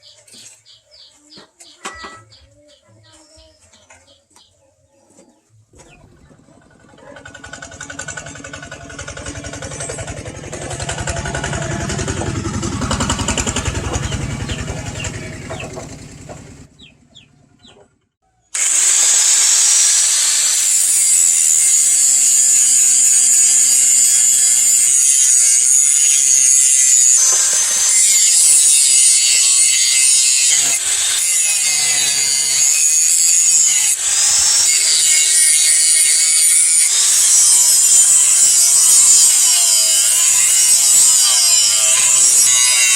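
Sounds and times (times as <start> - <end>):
workshop noise: 0.0 - 42.9
power tool grinding steel: 6.6 - 16.7, 18.6 - 42.9.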